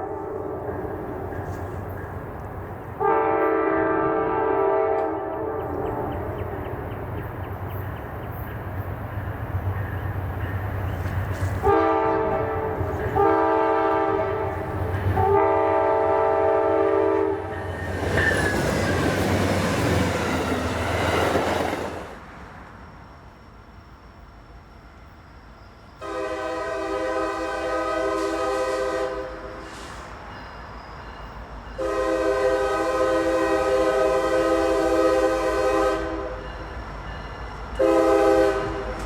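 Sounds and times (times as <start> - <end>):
train wheel and rail noise: 0.0 - 39.0
locomotive horn blasts: 3.0 - 6.2, 11.6 - 17.5, 26.0 - 29.7, 31.8 - 36.6, 37.8 - 39.0.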